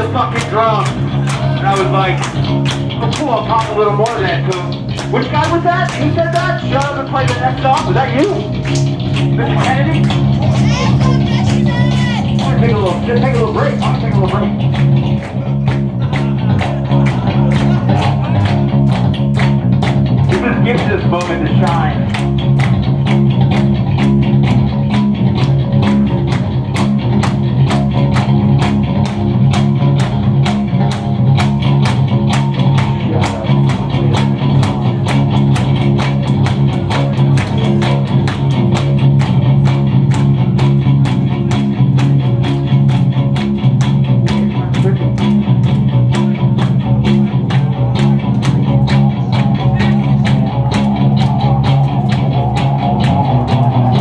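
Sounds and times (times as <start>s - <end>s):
electric bass guitar playing: 0.0s - 54.0s.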